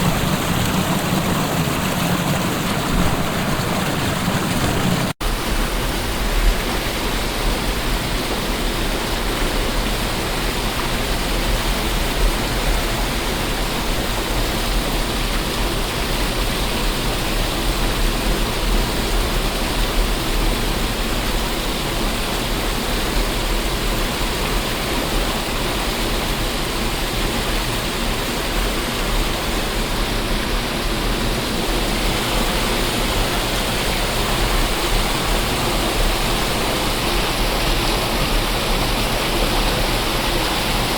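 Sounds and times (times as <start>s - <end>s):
waterfall rushing: 0.0s - 12.6s, 24.6s - 40.9s.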